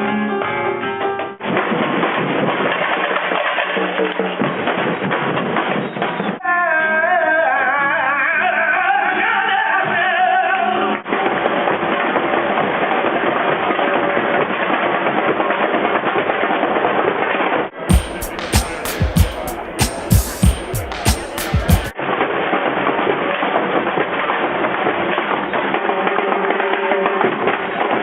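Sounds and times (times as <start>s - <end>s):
dense noisy live music: 17.9s - 21.9s
wavering melody over low notes: 17.9s - 21.9s.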